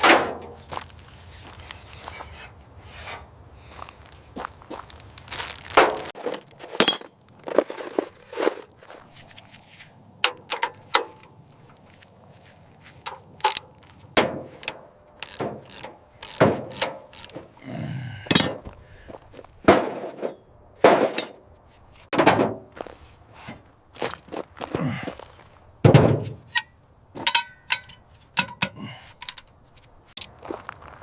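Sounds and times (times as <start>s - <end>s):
hand tools clanking on metal: 6.2s - 7.3s, 10.2s - 11.3s, 13.0s - 17.6s, 18.2s - 18.8s, 19.7s - 21.4s, 25.9s - 30.4s.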